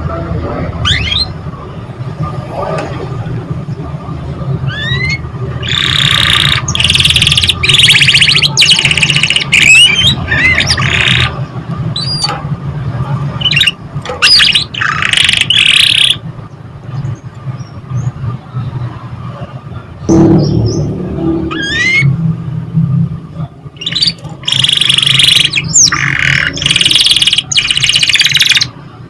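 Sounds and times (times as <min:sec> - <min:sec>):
canary singing: 0:00.8 - 0:01.4, 0:04.6 - 0:12.3, 0:13.3 - 0:16.3, 0:20.2 - 0:22.2, 0:23.8 - 0:28.8
low steady hum: 0:16.2 - 0:24.5.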